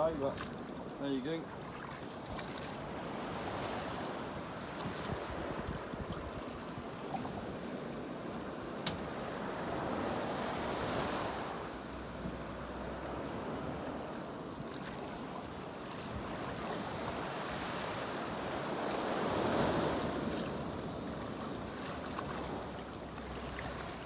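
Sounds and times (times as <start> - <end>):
wind buffeting microphone: 2.2 - 7.7
sea surf breaking: 8.4 - 14.4, 16.1 - 24.0.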